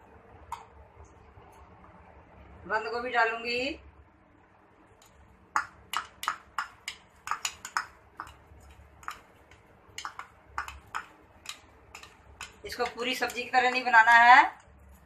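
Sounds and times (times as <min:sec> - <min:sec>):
metal spoon clinking on pan: 0:05.6 - 0:14.2.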